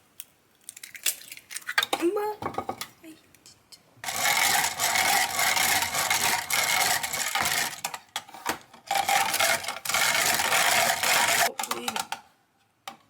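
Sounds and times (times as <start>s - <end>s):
utensil whisking in a bowl: 4.0s - 8.0s, 8.9s - 11.9s.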